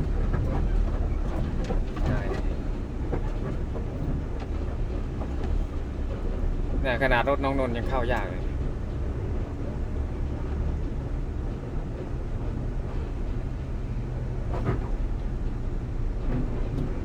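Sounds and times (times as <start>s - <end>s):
diesel engine rumbling: 0.0s - 17.0s.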